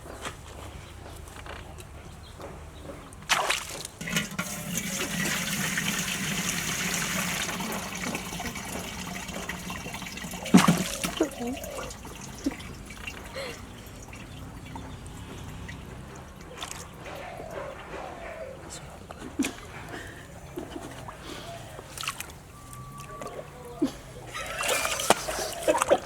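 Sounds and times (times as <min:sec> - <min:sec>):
sharp splash or thump: 0:03.3 - 0:04.0, 0:10.5 - 0:11.3
water rushing and splashing: 0:03.3 - 0:17.2, 0:20.8 - 0:23.4, 0:24.3 - 0:26.0.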